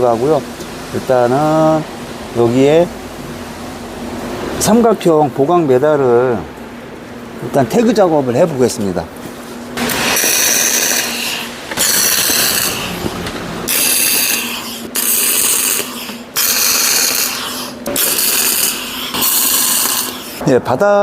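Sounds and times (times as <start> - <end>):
electric arc welding crackling: 9.8 - 20.4.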